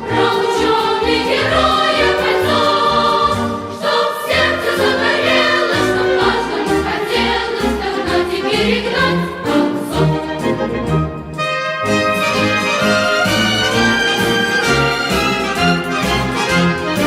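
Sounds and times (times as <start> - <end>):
children's choir singing: 0.0 - 11.0
instrumental accompaniment: 0.0 - 17.0.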